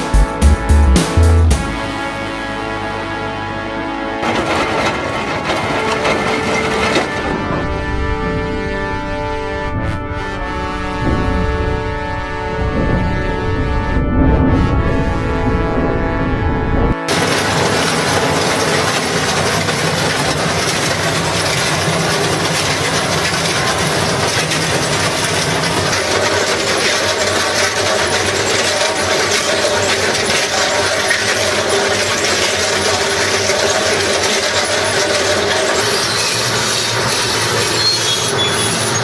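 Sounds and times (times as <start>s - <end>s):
heavy machinery grinding clatter: 4.2s - 8.1s, 17.1s - 39.0s.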